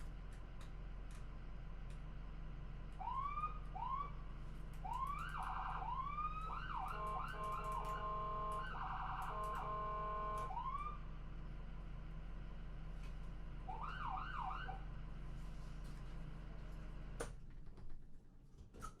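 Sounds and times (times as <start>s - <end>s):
low steady hum: 0.0s - 18.7s
electronic ambulance siren: 3.0s - 4.2s, 4.8s - 11.0s, 13.7s - 14.8s.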